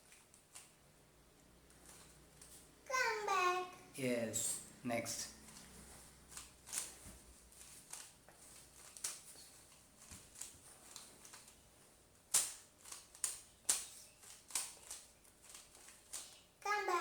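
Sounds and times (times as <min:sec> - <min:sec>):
puzzle cube layers clicking: 0:12.3 - 0:16.4.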